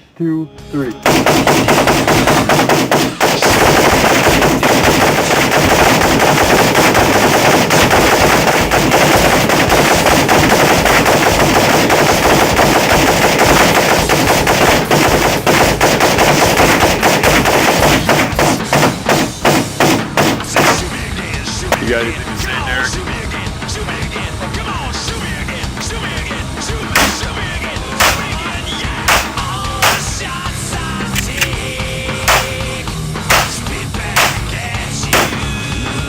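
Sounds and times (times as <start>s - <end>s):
rapid rifle fire: 1.0s - 21.1s, 26.9s - 30.5s, 31.2s - 35.6s.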